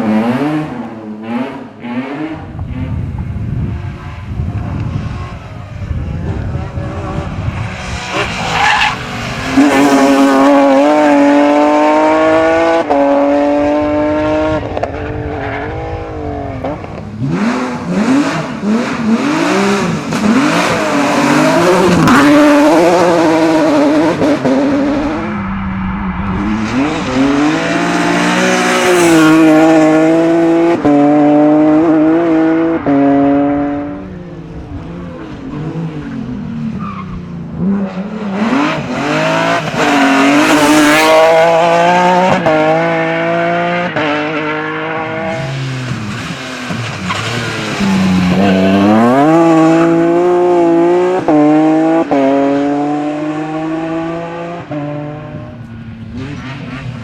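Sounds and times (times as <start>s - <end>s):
rally car accelerating through gears: 0.0s - 5.5s, 6.2s - 57.0s.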